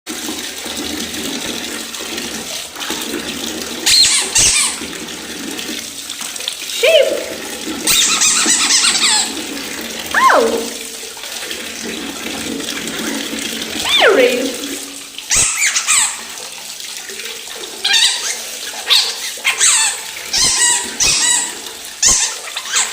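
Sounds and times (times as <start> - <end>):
water splashing in baby bath: 0.1 - 22.9
short sliding squeals: 3.8 - 4.8, 17.9 - 22.9.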